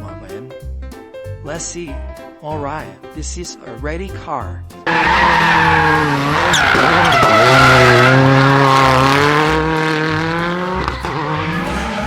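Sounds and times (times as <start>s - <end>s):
race car engine high revs: 4.9s - 12.0s.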